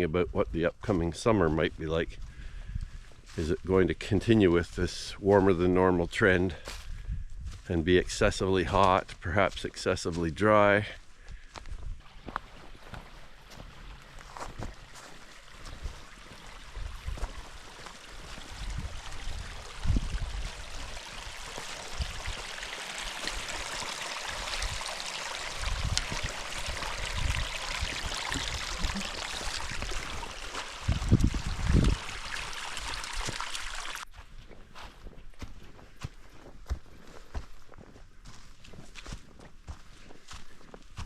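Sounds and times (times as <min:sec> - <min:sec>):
footsteps on a trail: 0:01.4 - 0:24.0, 0:25.6 - 0:33.4, 0:34.0 - 0:41.0
stream running: 0:11.6 - 0:34.1.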